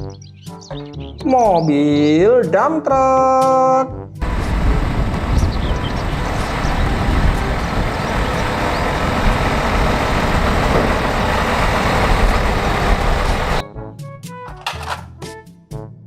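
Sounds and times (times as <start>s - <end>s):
dump truck engine rumbling: 4.2s - 13.6s.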